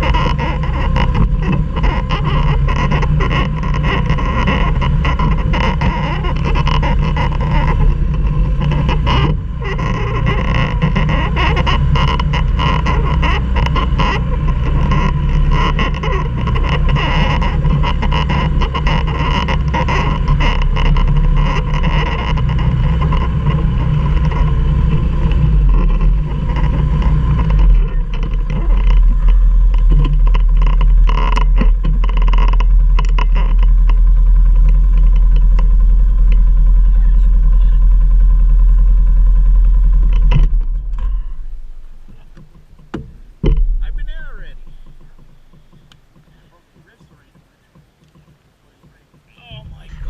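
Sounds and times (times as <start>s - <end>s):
atv engine under load: 0.0s - 50.0s
knocks and rattles: 0.0s - 50.0s.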